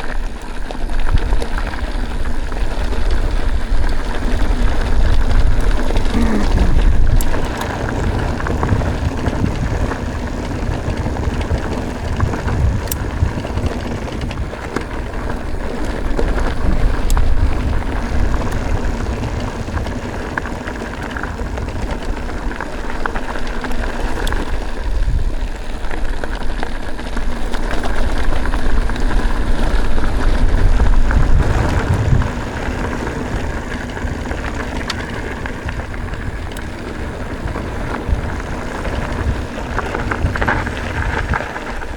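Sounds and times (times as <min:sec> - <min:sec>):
bike clicks and rattles: 0:00.0 - 0:41.9
tyres rolling over gravel: 0:00.0 - 0:41.9
wind buffeting microphone: 0:02.1 - 0:25.6, 0:27.2 - 0:41.9.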